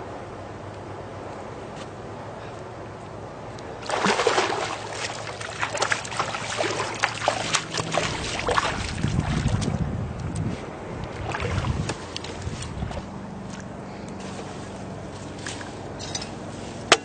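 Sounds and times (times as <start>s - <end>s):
water splashing and sloshing: 3.6s - 17.0s
wind rumble on microphone: 5.6s - 13.8s.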